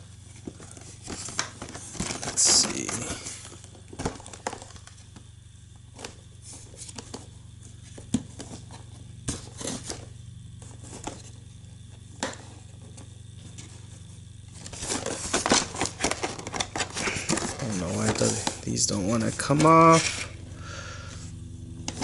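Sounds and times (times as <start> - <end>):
low steady hum: 0.0 - 22.0
packaging crinkling rustle: 0.2 - 5.3, 14.5 - 20.2.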